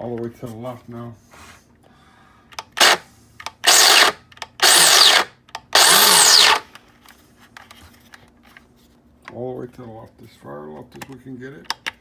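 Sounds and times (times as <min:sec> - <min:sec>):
coffee grinder motor grinding beans: 0:03.7 - 0:06.6.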